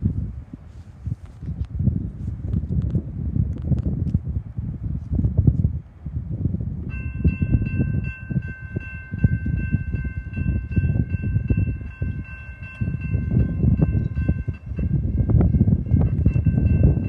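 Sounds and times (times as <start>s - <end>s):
train rumbling past: 6.9s - 17.0s.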